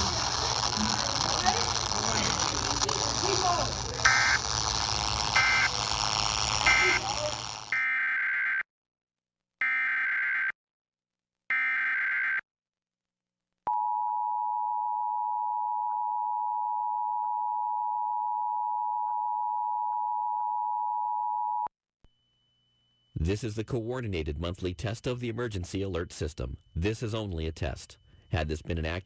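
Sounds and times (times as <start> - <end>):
digital header bursts: 0.0 - 7.8
steady attention tone: 0.0 - 7.8.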